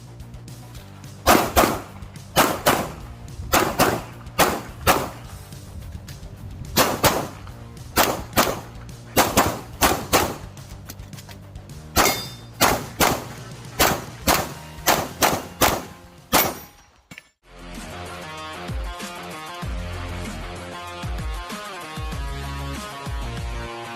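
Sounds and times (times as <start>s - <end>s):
pistol shots: 1.2s - 5.3s, 6.8s - 10.6s, 12.0s - 16.8s.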